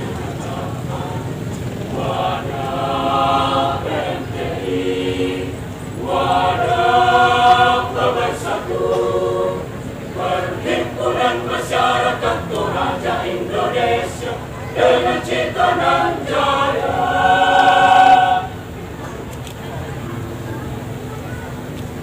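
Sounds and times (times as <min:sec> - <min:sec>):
choir singing: 0:00.0 - 0:18.9.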